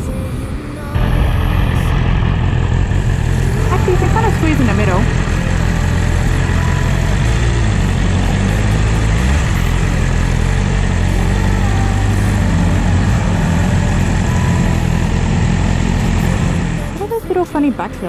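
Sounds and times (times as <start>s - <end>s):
motorcycle engine humming: 0.0s - 18.0s.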